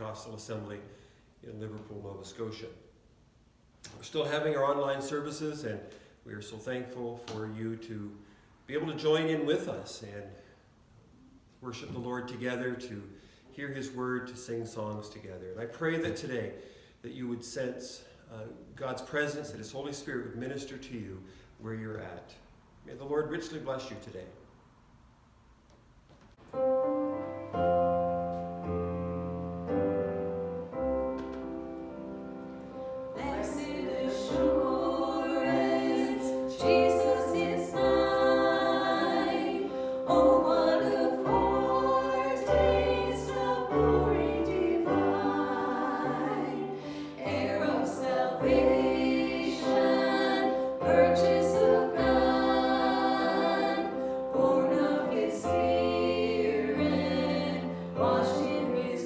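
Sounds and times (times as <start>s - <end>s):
group of singers: 32.7s - 59.0s.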